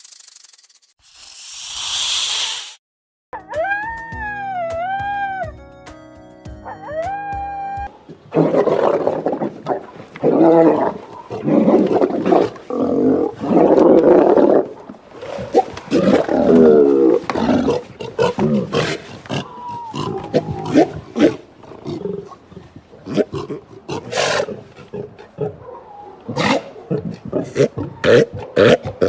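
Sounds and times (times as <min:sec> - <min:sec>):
big cat roaring and growling: 0:08.3 - 0:22.4.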